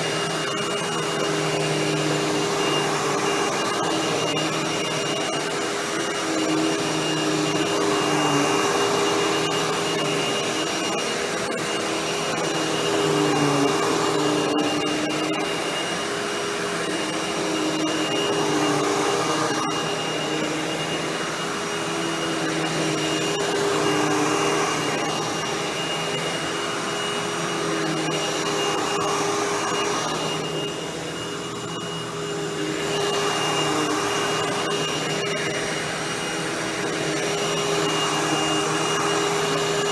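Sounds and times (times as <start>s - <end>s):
vacuum cleaner whining: 0.0s - 39.9s.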